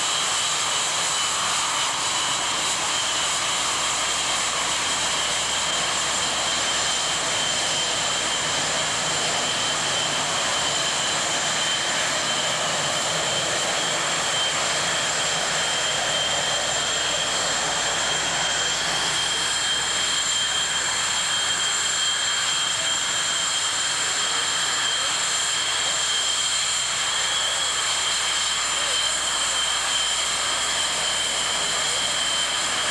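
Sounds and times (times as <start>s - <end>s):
high engine whine: 0.0s - 32.9s
jet engine roar: 0.0s - 32.9s.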